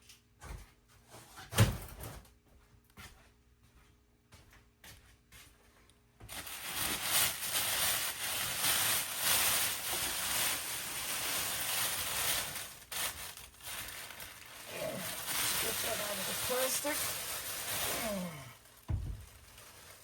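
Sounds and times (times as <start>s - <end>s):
plastic packaging crinkling: 6.3s - 20.0s.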